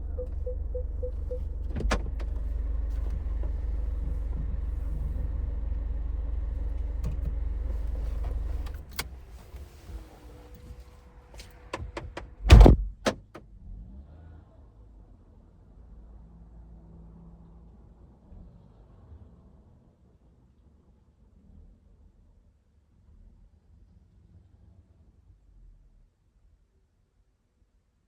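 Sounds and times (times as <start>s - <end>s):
car engine and road rumble: 0.0s - 20.0s
loud thump: 12.4s - 13.4s.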